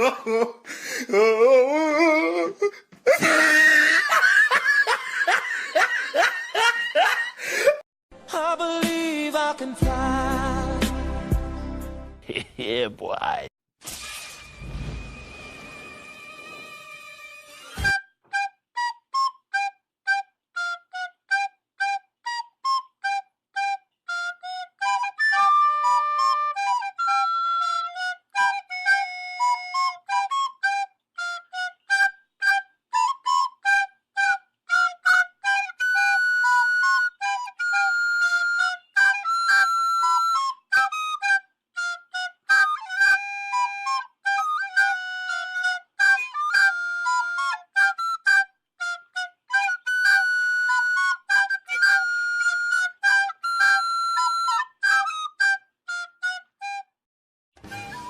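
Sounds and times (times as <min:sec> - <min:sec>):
solo flute playing: 0:15.2 - 0:57.0, 0:57.6 - 0:58.0.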